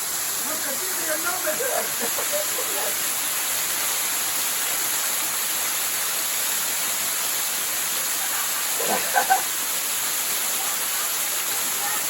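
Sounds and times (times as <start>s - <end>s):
waterfall rushing: 0.0s - 12.0s
person's voice: 0.4s - 3.0s.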